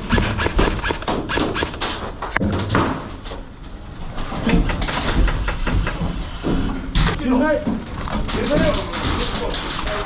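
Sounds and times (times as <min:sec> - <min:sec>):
sharp clicks: 0:00.0 - 0:02.4.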